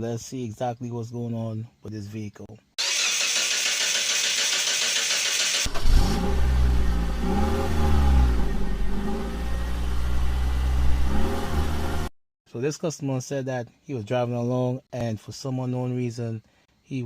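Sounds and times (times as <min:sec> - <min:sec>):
car engine revving: 0:02.8 - 0:12.1.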